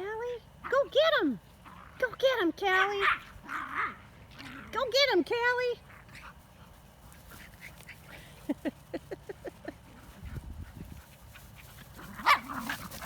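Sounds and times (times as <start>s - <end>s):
dog yelping: 12.2s - 12.8s.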